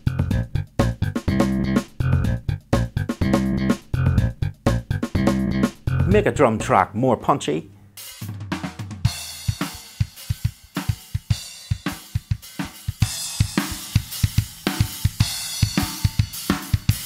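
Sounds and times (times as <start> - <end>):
drum kit playing fast beat: 0.0 - 6.9, 8.0 - 17.0.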